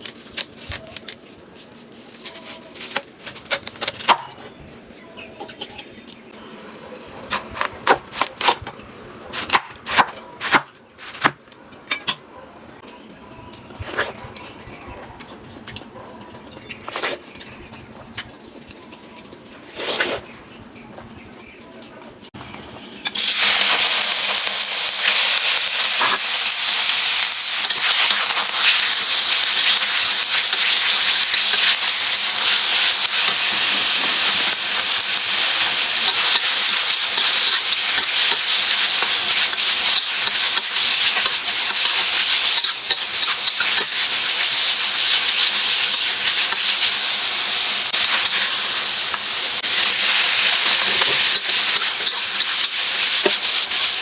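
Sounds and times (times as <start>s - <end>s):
food sizzling in hot oil: 23.0s - 54.0s.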